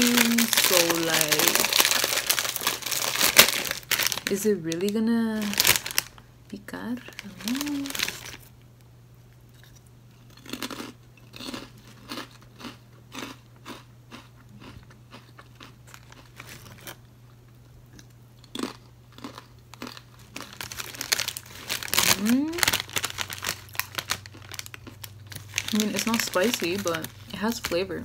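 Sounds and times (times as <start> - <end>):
steady low hum: 0.0 - 28.0
crunchy snack being chewed: 9.5 - 17.1, 17.9 - 27.8.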